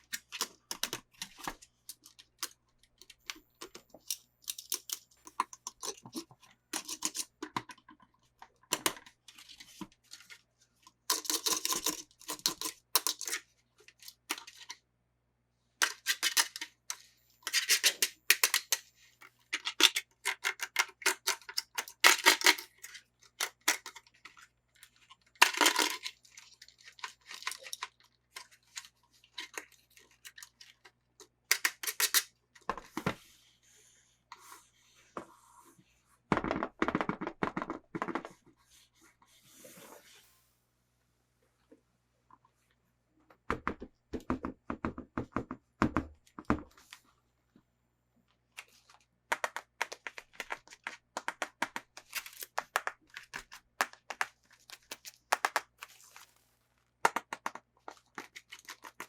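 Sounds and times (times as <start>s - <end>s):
packaging rustling and scraping: 51.9s - 57.0s.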